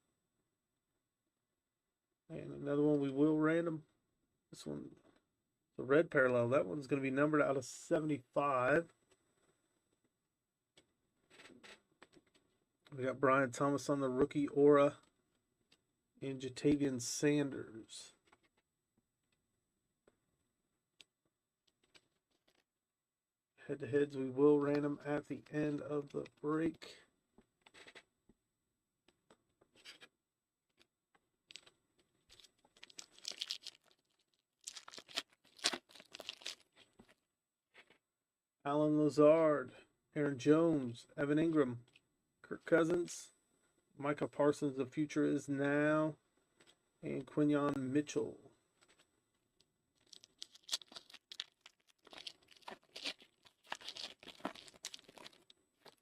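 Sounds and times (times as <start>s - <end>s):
wrapper tearing and crinkling: 32.3s - 36.8s, 50.0s - 56.0s.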